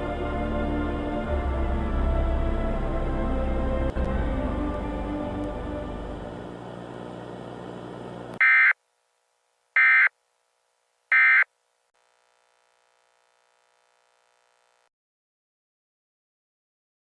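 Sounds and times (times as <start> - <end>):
dark scary background music: 0.0 - 6.5.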